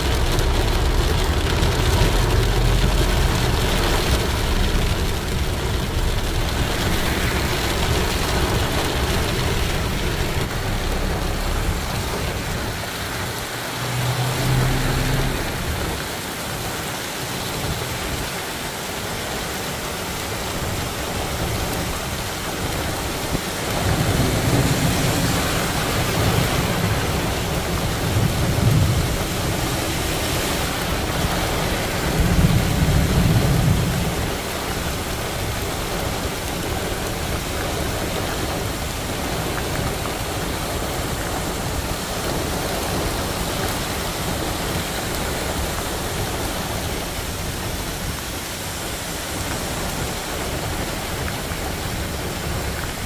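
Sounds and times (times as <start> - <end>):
low rumble: 0.0 - 16.2
rain falling: 0.0 - 53.0.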